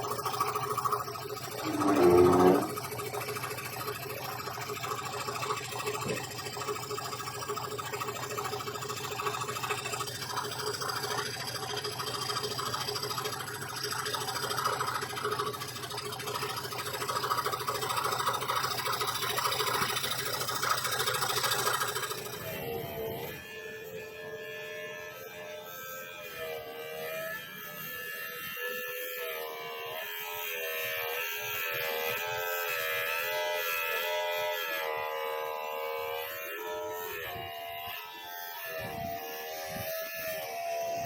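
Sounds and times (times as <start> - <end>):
scroll saw cutting board: 1.3 - 3.4.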